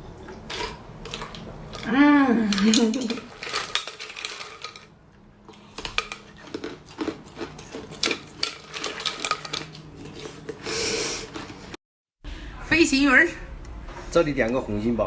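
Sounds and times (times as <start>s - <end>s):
ice being chewed: 0.2s - 4.8s, 5.5s - 11.8s.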